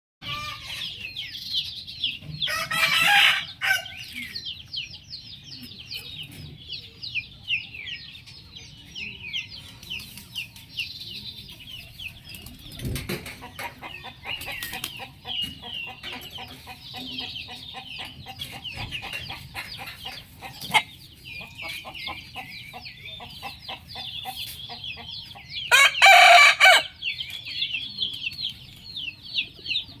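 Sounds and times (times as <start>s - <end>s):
small birds chirping: 0.2s - 30.0s
rooster crowing: 25.7s - 26.9s.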